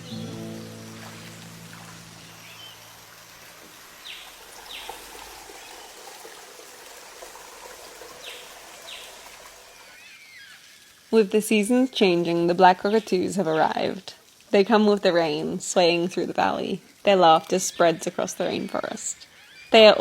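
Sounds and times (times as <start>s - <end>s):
birds calling: 0.0s - 6.4s, 17.5s - 20.0s
creek water running: 0.0s - 20.0s.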